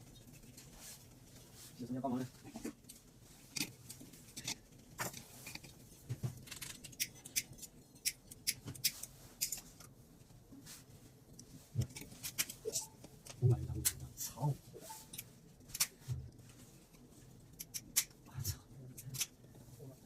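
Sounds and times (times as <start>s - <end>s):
small parts and tools clicking: 2.5s - 10.0s, 11.3s - 14.1s, 15.0s - 19.6s.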